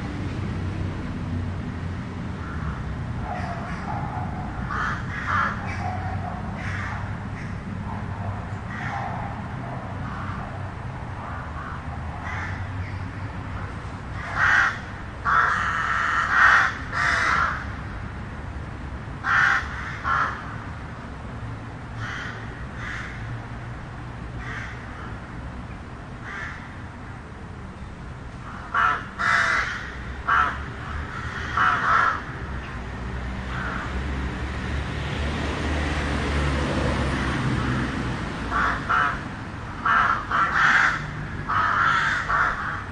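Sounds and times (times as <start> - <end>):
low rumble of town traffic: 0.0 - 42.9
vehicle passing with hiss: 0.0 - 42.9
crows cawing: 2.4 - 3.9, 4.6 - 7.6, 8.7 - 9.1, 10.0 - 10.5, 11.5 - 13.0, 14.1 - 17.8, 19.2 - 20.6, 22.0 - 23.3, 24.4 - 25.2, 26.2 - 26.8, 28.5 - 32.4, 33.5 - 34.0, 38.5 - 42.9.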